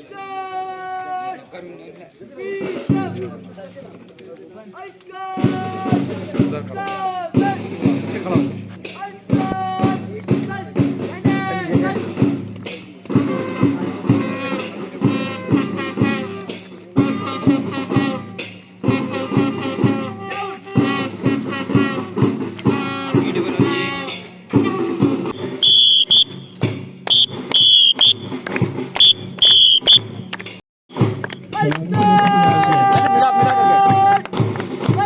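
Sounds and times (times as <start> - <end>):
short shrill high tones: 25.4 - 28.3.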